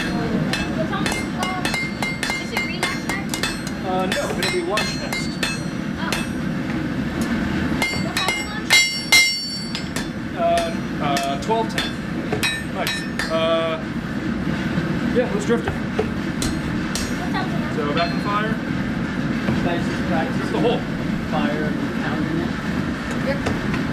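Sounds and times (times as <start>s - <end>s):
hammer blows on hot steel: 0.0s - 15.1s.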